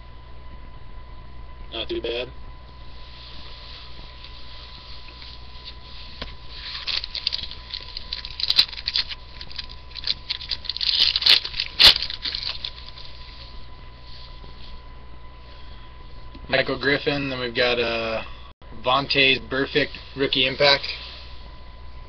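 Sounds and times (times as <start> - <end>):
foil wrapper tearing and crinkling: 6.6 - 13.2.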